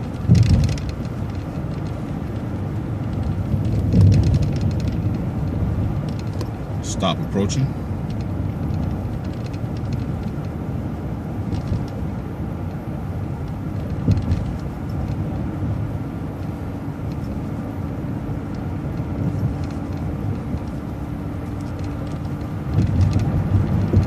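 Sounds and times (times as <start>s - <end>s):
bus engine and road noise: 0.0s - 24.0s.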